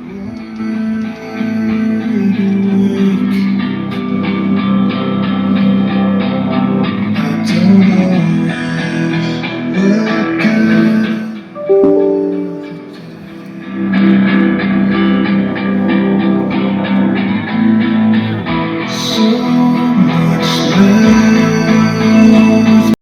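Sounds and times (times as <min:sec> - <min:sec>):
guitar music through speaker: 0:11.6 - 0:13.4.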